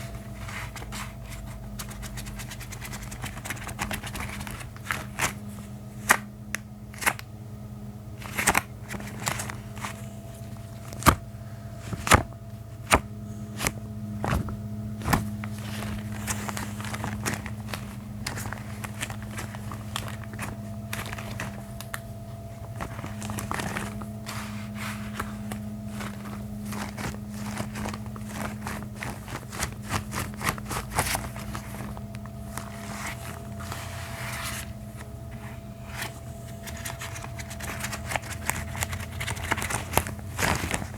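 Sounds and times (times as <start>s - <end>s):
low hum: 4.8s - 40.9s
gloves snapping and crackling: 6.0s - 7.3s.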